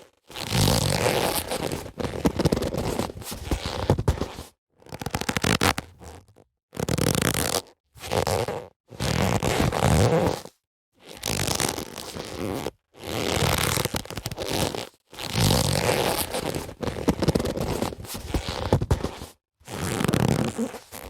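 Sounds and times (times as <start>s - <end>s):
boxing gloves rubbing: 0.4s - 6.2s, 11.1s - 21.0s.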